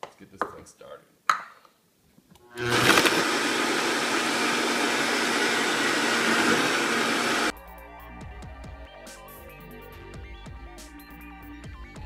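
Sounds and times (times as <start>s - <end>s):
blender running at high speed: 2.5s - 7.5s.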